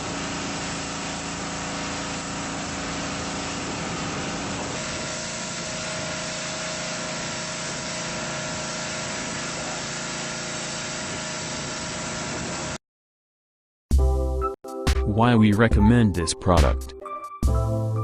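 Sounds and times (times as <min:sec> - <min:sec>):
pressure washer engine running: 0:00.0 - 0:12.8.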